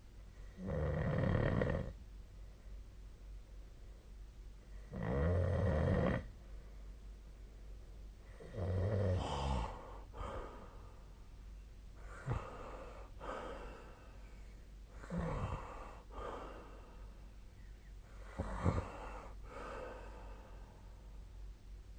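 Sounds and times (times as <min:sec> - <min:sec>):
soft breaths: 0:06.2 - 0:21.5
person snoring: 0:08.4 - 0:10.7, 0:12.0 - 0:14.0, 0:15.0 - 0:16.8, 0:18.2 - 0:20.5.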